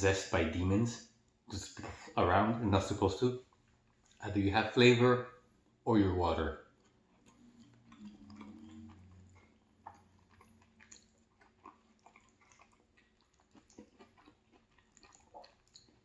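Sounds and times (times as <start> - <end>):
person chewing: 3.4 - 4.3, 6.6 - 16.0.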